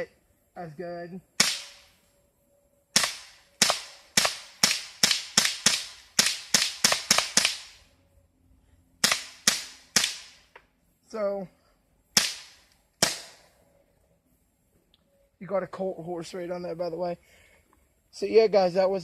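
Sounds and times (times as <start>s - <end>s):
bb pistol firing sharp cracks: 1.4s - 2.0s, 2.9s - 7.9s, 9.0s - 10.6s, 12.1s - 13.5s.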